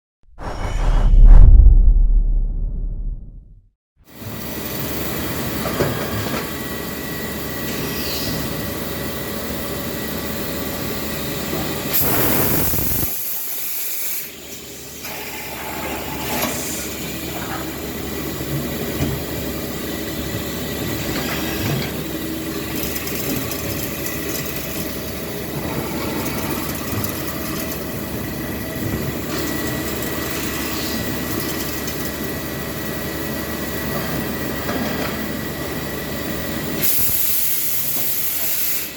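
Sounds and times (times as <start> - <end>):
loud rush of noise: 0.4 - 3.6.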